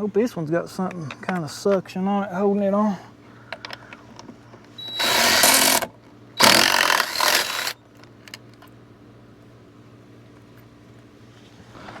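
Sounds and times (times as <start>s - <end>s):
power tool running: 4.8s - 7.8s.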